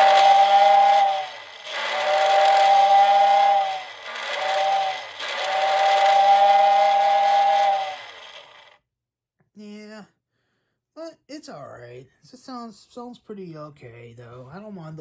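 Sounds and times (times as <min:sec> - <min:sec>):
steam locomotive whistle blasts: 0:00.0 - 0:08.6.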